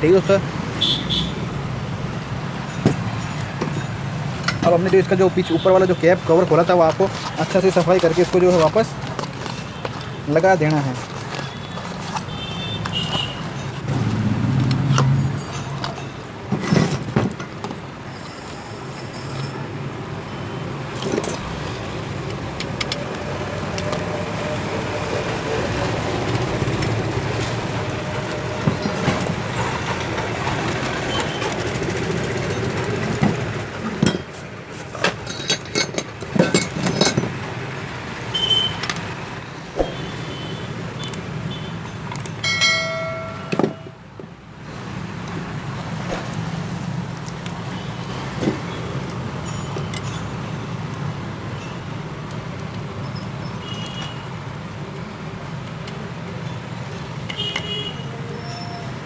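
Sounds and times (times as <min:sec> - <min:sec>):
traffic background noise: 0:00.0 - 0:59.0
clicks and knocks of parts handled: 0:06.4 - 0:13.9, 0:32.9 - 0:37.5, 0:41.0 - 0:41.3, 0:42.0 - 0:42.5.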